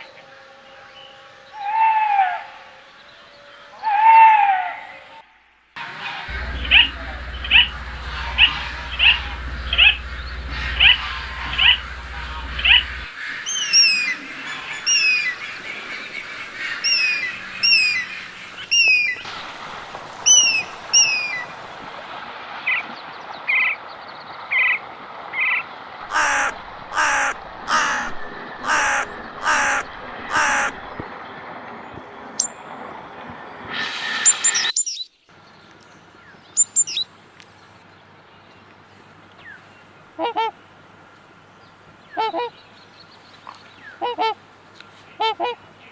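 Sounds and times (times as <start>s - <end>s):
birds calling: 5.8s - 19.3s, 26.0s - 32.6s
loud caws: 6.3s - 17.5s, 26.1s - 30.9s.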